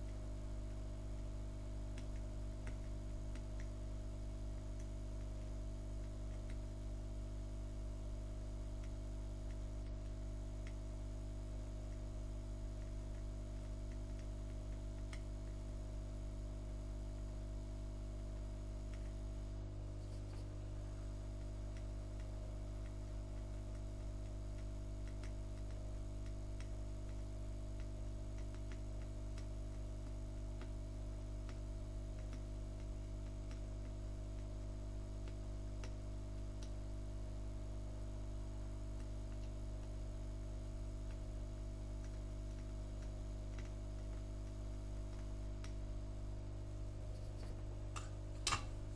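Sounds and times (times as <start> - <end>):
faint ticks: 0.0 - 7.7, 8.5 - 45.8
low electrical hum: 0.0 - 48.9.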